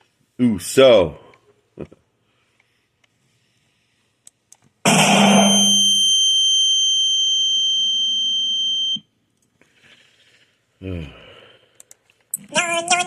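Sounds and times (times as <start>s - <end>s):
electronic alarm beep: 4.9s - 9.1s.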